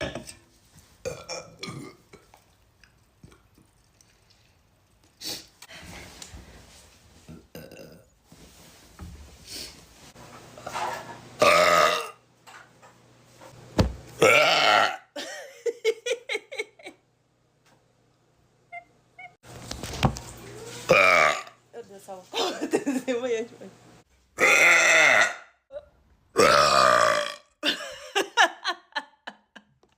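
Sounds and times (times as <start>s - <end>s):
woman burping: 1.1s - 2.2s, 7.3s - 8.1s, 11.4s - 12.2s, 14.2s - 15.4s, 20.9s - 21.6s, 24.4s - 27.8s.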